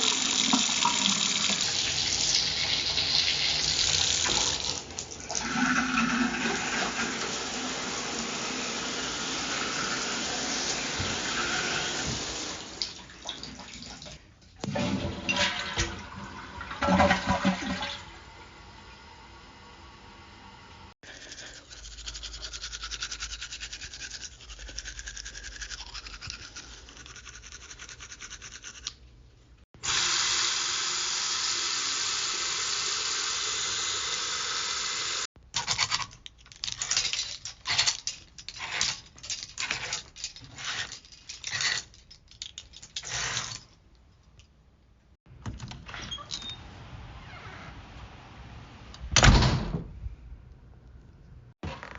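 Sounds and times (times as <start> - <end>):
toothbrush strokes: 21.0 - 29.0.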